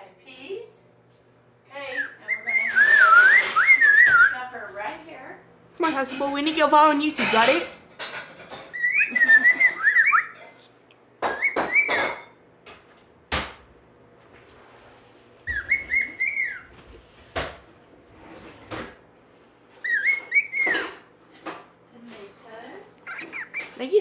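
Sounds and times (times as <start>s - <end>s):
bird whistling: 1.9s - 4.5s, 8.7s - 10.5s, 11.2s - 12.2s, 15.4s - 16.8s, 19.8s - 20.9s, 23.0s - 23.8s.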